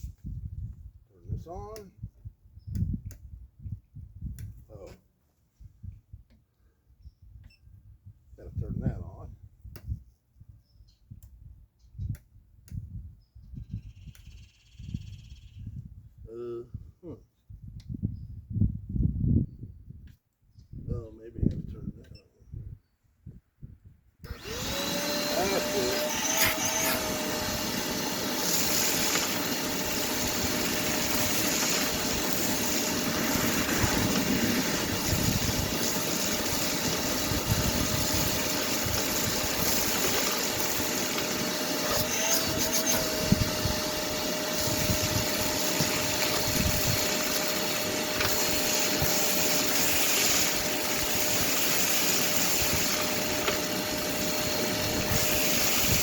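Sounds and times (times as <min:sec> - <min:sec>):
shop vac motor whine: 0:24.2 - 0:56.0.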